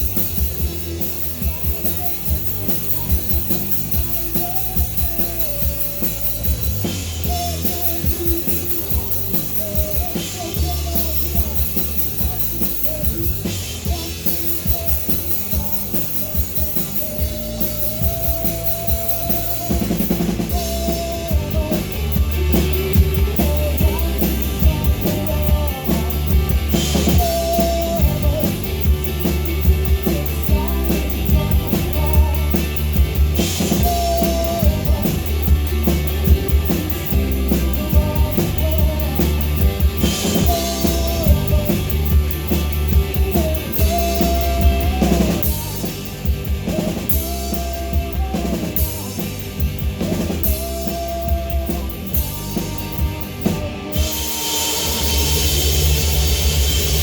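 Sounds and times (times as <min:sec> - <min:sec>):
drum kit beat: 0:00.0 - 0:57.0
rock band playing live: 0:00.0 - 0:57.0
cymbal crashes: 0:54.1 - 0:57.0.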